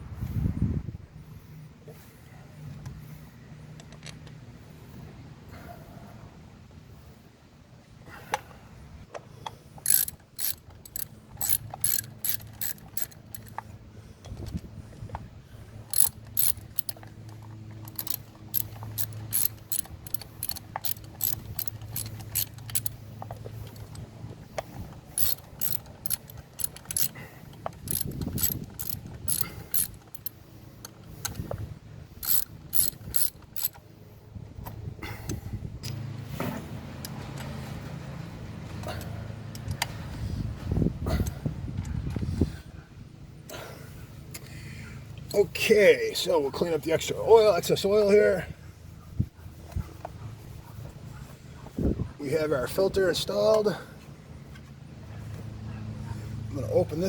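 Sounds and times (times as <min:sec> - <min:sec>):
ratchet wrench clicking: 0:09.8 - 0:13.6, 0:15.9 - 0:31.6, 0:32.2 - 0:33.8.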